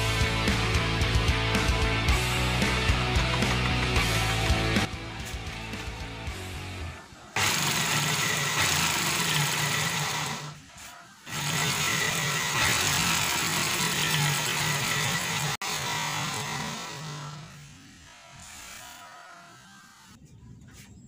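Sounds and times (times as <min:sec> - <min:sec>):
electric drill pulsing buzz: 0:07.4 - 0:20.2.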